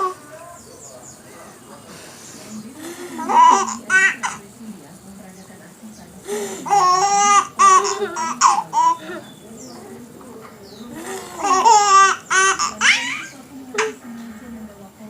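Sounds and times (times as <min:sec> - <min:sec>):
baby laughing: 0:03.2 - 0:04.4, 0:06.6 - 0:09.2, 0:11.0 - 0:14.0.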